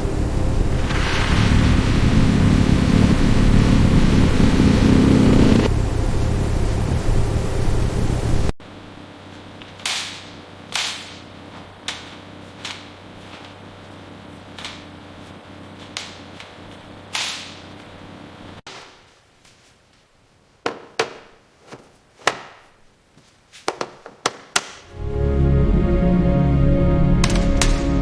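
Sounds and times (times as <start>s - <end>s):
steady machine hum: 0.0s - 9.6s
music: 24.9s - 28.0s.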